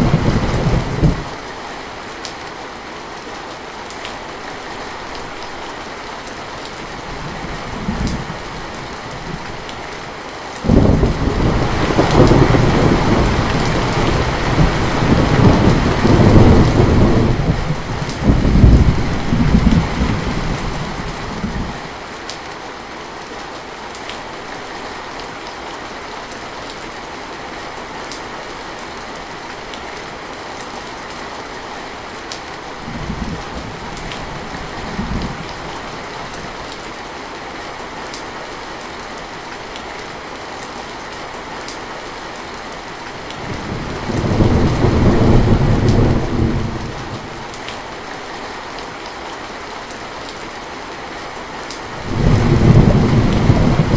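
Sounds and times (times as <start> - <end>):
rolling thunder rumble: 0.0 - 1.4, 10.7 - 21.8, 43.4 - 47.5, 52.0 - 53.9
heavy rain falling: 0.0 - 53.9.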